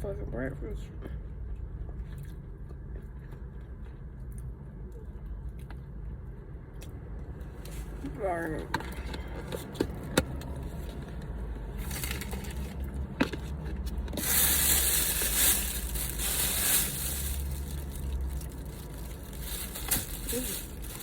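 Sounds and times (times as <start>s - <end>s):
packaging crinkling and rustling: 11.8s - 13.0s, 14.0s - 21.0s.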